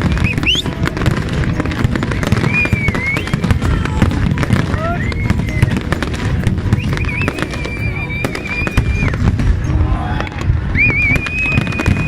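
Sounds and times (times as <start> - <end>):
fireworks bangs and crackles: 0.0 - 12.0
high whistle-like tone: 0.1 - 0.8, 2.2 - 3.6, 4.6 - 12.0.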